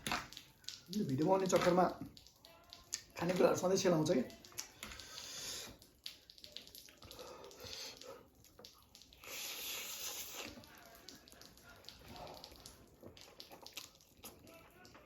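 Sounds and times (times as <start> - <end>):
wet mouth clicks and chewing: 1.6 - 3.2, 4.3 - 15.0
noodle slurp: 4.5 - 5.9, 9.0 - 10.8.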